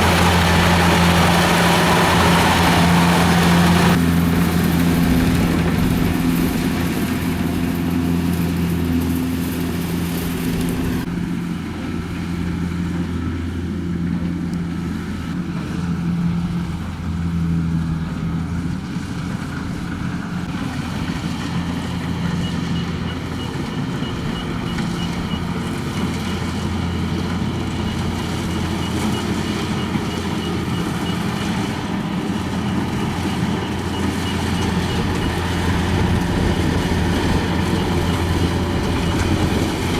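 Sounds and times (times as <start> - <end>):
combine harvester engine running: 0.0 - 39.9.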